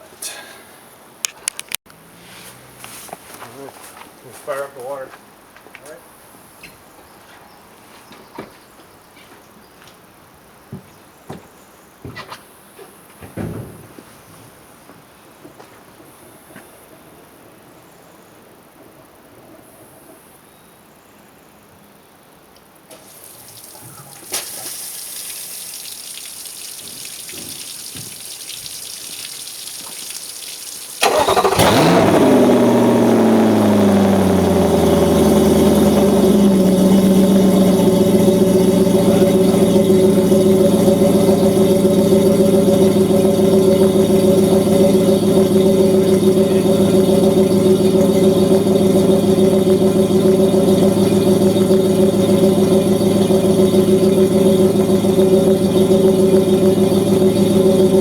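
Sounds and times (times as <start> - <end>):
outboard motor revving and idling: 1.9 - 3.4, 31.0 - 58.0
hose water hissing: 22.9 - 58.0.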